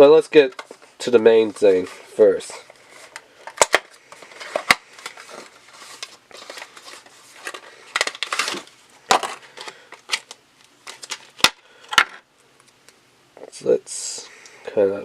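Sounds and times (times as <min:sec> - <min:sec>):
packaging crackling and crinkling: 0:00.0 - 0:12.7
packaging being pulled apart: 0:02.9 - 0:11.6.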